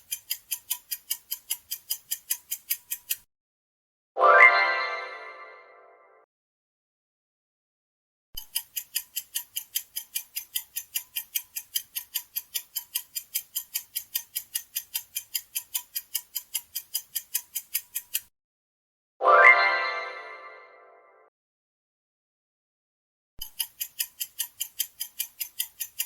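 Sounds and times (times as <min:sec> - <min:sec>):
clock ticking: 0:00.0 - 0:03.3, 0:08.4 - 0:18.3, 0:23.4 - 0:26.0.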